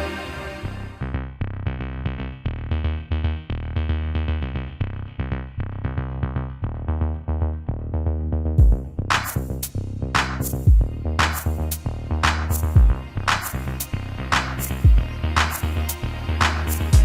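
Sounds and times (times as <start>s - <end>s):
electronic music with drum-machine beat: 8.6s - 17.0s.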